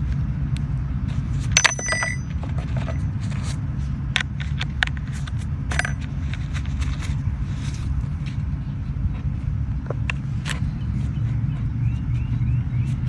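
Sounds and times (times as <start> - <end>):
metal tool clicking: 1.6 - 2.3, 5.7 - 6.0
ringing metallic clink: 1.6 - 3.0, 5.7 - 6.0.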